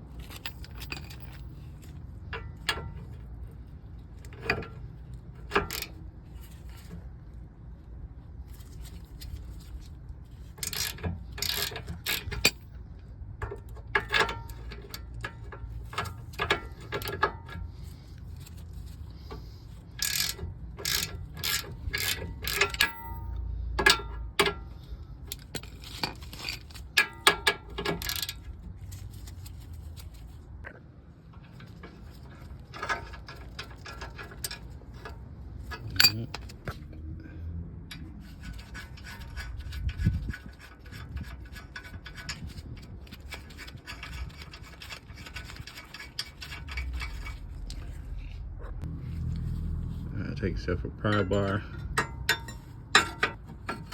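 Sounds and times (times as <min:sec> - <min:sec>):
hand ratchet clicking: 0:10.6 - 0:12.6, 0:19.3 - 0:24.6.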